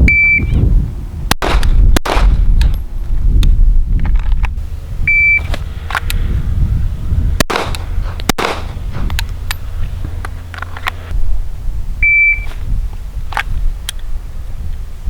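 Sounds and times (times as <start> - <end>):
shot timer beep: 0.1 - 0.5, 5.1 - 5.5, 12.0 - 12.5
pistol shots: 1.3 - 2.9, 7.4 - 9.5.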